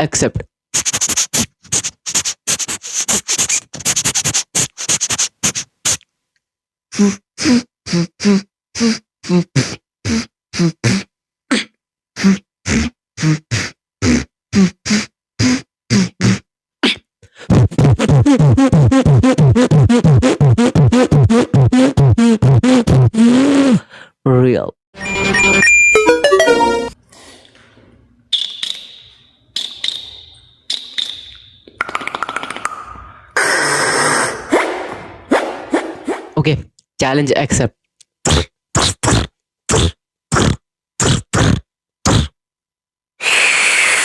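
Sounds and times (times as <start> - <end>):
beatboxing clicks and hisses: 0.7 - 6.1, 6.9 - 23.8, 28.4 - 29.0, 29.6 - 34.8, 38.2 - 42.4, 43.2 - 44.0.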